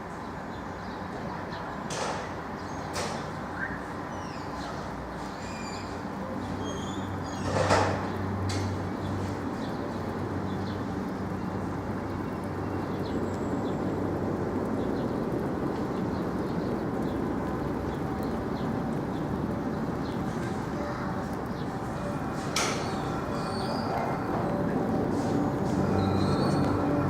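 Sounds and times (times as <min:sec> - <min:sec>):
bird chirps: 0:26.0 - 0:26.7.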